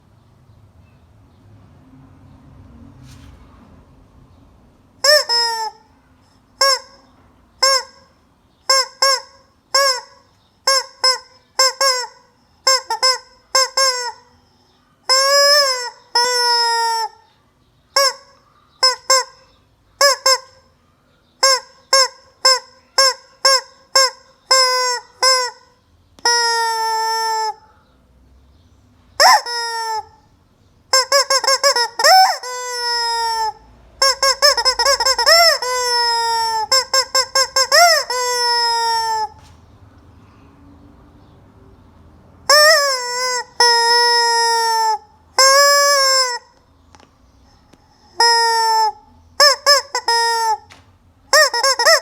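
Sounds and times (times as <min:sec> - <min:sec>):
chicken squawking: 0:05.0 - 0:06.0, 0:21.4 - 0:27.8, 0:29.2 - 0:30.2, 0:30.9 - 0:39.6, 0:42.5 - 0:46.6, 0:47.8 - 0:52.0.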